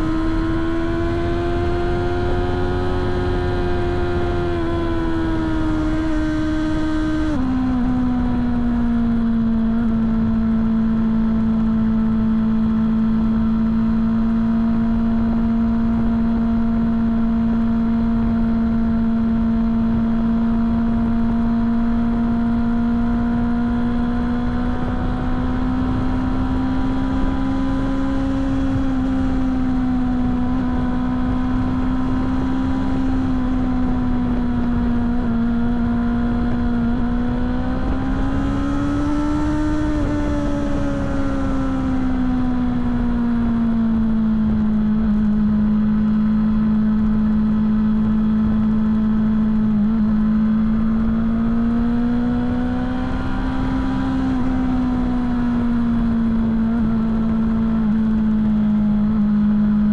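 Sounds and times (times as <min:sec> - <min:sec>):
motorcycle engine cruising: 0:00.0 - 0:59.9
wind and road rumble: 0:00.0 - 0:59.9.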